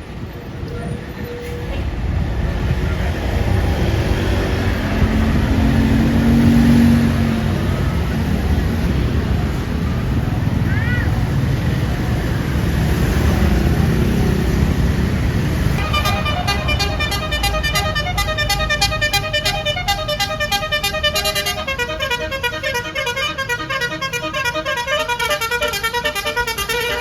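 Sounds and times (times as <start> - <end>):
bus air horn melody: 15.8 - 27.0.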